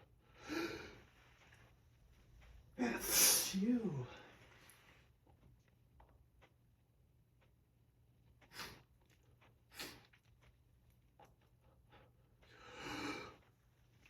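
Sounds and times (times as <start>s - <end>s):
person breathing: 0.2s - 1.3s, 11.9s - 13.4s
person sniffing: 3.0s - 3.6s, 8.4s - 8.9s, 9.7s - 10.1s.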